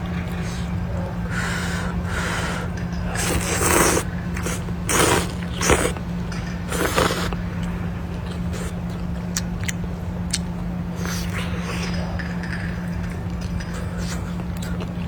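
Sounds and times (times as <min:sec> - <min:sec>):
steady low hum: 0:00.0 - 0:15.0
person slurping noodles: 0:01.3 - 0:07.4, 0:08.2 - 0:09.4.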